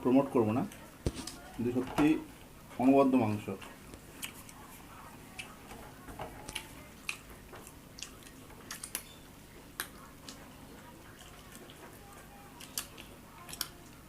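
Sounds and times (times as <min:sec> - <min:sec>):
wet chewing mouth smacks: 0:04.0 - 0:04.6, 0:06.5 - 0:10.4.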